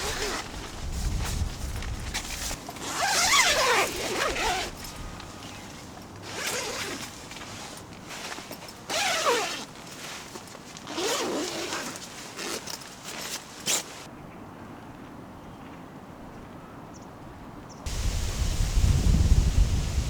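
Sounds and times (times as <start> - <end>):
zipper being pulled: 0.0 - 4.9, 6.2 - 7.2, 8.3 - 14.1.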